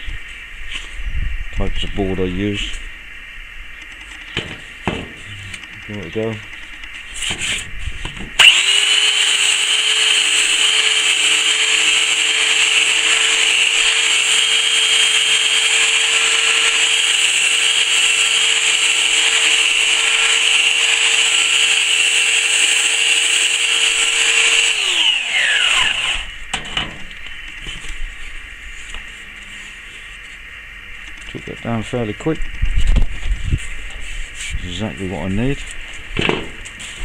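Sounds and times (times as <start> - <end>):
motor winding down: 8.4 - 26.4
belt sander running: 8.4 - 27.9.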